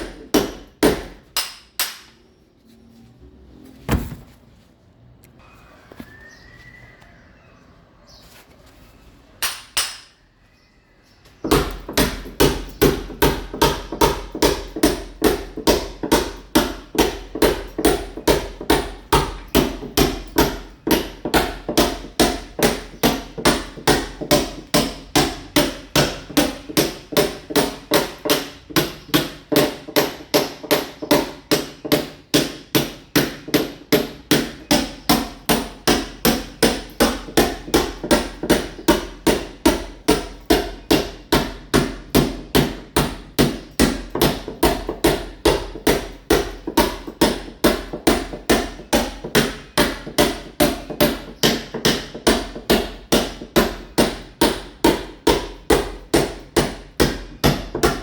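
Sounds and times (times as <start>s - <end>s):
sledgehammer chipping masonry wall: 0.0s - 2.0s, 11.4s - 58.0s.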